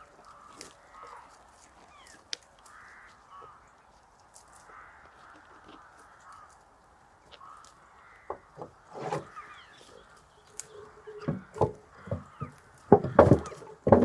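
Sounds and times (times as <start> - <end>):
faint bird chirping: 0.0 - 6.6, 9.2 - 13.7
dull knocks and thuds: 11.2 - 14.0.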